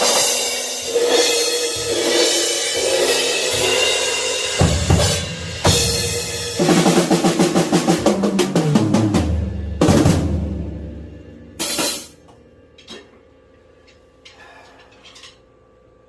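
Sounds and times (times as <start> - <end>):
drum kit groove with cymbals: 0.0 - 12.3
tom drum fill: 4.6 - 12.2.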